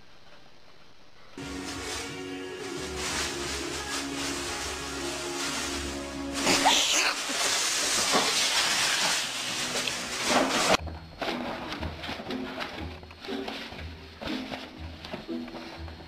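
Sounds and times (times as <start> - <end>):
background music: 1.4 - 6.9, 9.1 - 16.0
loud hissing with squeals: 6.3 - 10.7.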